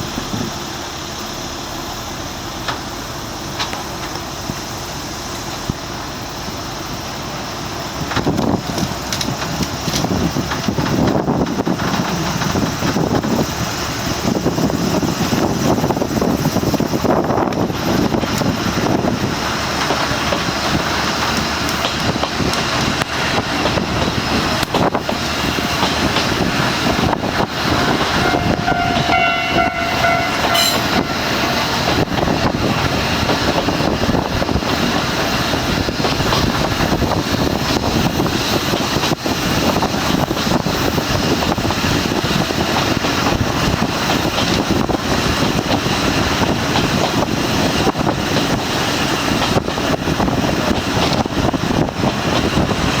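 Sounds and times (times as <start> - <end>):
diesel train passing: 0.0 - 53.0
train horn blast: 26.9 - 33.3
level crossing bell ringing: 27.9 - 32.0.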